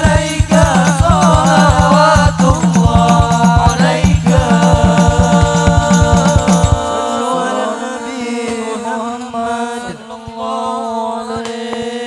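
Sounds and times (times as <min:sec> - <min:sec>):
drum beat: 0:00.0 - 0:07.3
voices chanting: 0:00.0 - 0:12.0.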